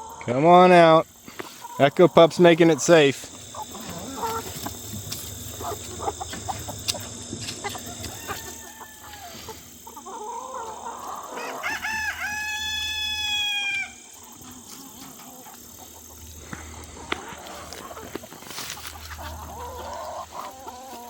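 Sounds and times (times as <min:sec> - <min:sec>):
chickens clucking: 0:00.0 - 0:21.0
rooster crowing: 0:07.6 - 0:14.1.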